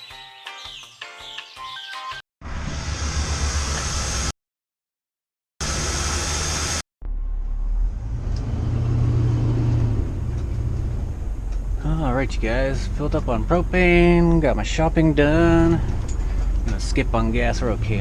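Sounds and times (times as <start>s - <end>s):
road noise: 5.6s - 18.0s
vehicle engine running: 5.6s - 18.0s.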